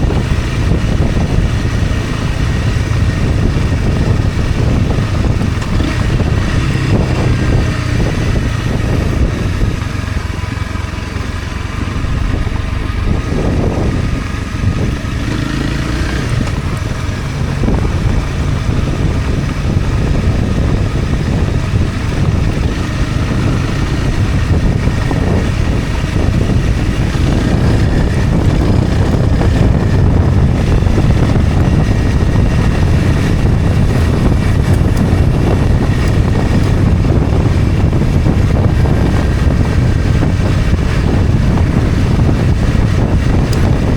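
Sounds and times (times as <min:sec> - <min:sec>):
motorcycle engine rumbling: 0:00.0 - 0:43.9.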